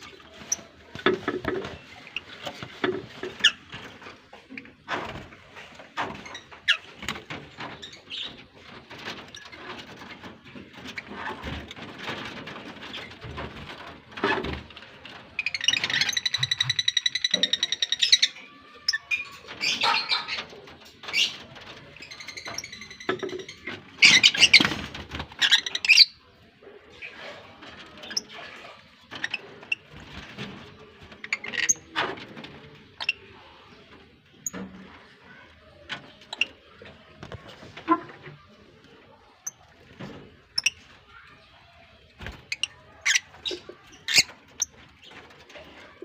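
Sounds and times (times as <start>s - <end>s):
lovebirds chattering: 15.4s - 26.3s, 39.2s - 46.0s.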